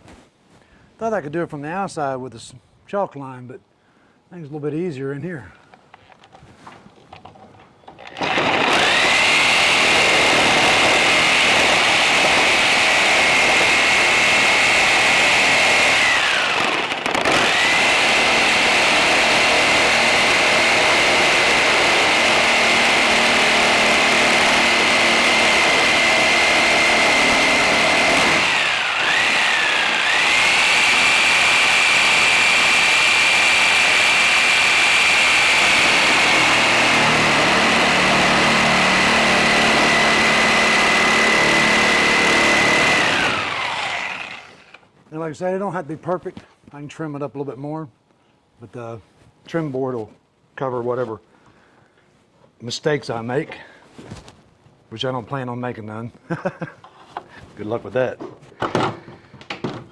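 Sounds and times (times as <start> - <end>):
circular saw cutting wood: 7.9 - 44.8.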